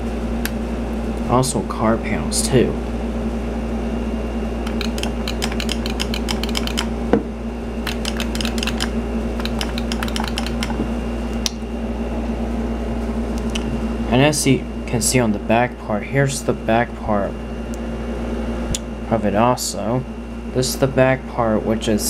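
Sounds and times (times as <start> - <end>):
steady electrical hum: 0.0 - 22.0
rapid light clicking: 4.6 - 6.9, 7.8 - 10.8.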